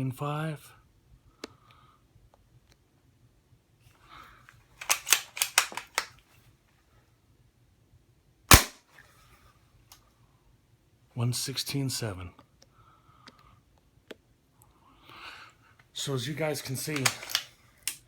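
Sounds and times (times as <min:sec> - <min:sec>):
metallic rifle bolt clicks: 0:04.8 - 0:06.1, 0:08.5 - 0:08.8, 0:16.9 - 0:18.0
suppressed rifle shot: 0:08.5 - 0:08.8.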